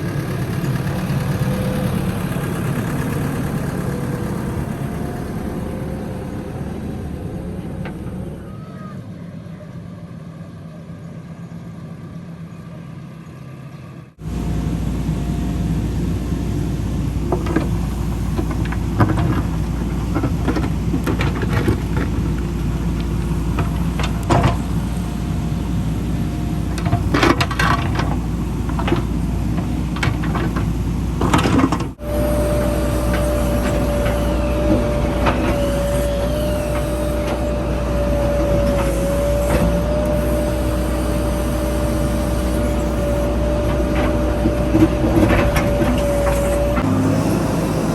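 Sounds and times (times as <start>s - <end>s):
diesel engine running under load: 0.0s - 47.9s
knocks and clanks: 26.7s - 40.4s, 42.8s - 47.0s.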